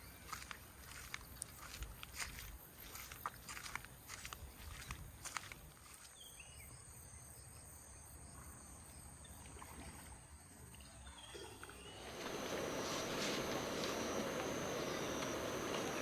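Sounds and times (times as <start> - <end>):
insect trill: 5.9 - 16.0
rushing noise: 12.1 - 16.0.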